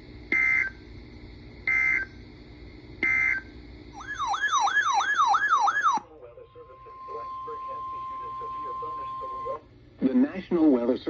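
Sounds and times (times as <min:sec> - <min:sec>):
electronic siren-like warble: 0:04.0 - 0:06.0
emergency alert data tones: 0:04.0 - 0:06.0.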